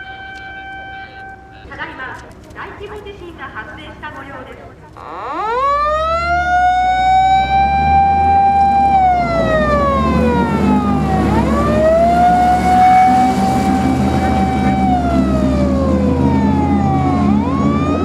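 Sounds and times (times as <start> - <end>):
fire engine siren wailing: 0.0 - 1.8, 5.0 - 18.0
low engine rumble: 8.0 - 18.0.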